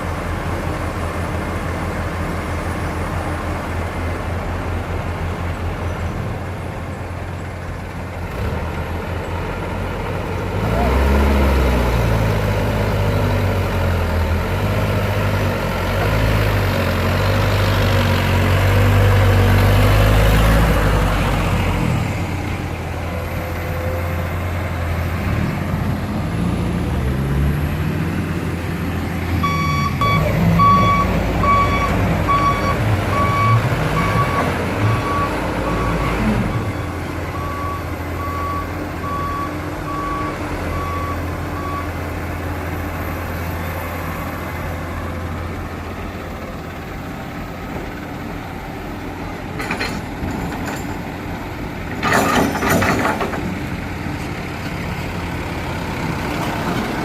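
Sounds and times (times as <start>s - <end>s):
diesel engine running: 0.0s - 57.0s
reversing alarm beeping: 29.4s - 42.0s.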